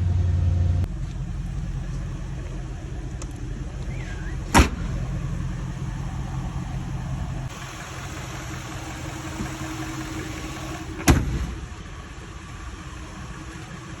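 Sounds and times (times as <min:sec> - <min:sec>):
car engine idling: 0:00.0 - 0:14.0
engine sharp knock: 0:00.9 - 0:12.0.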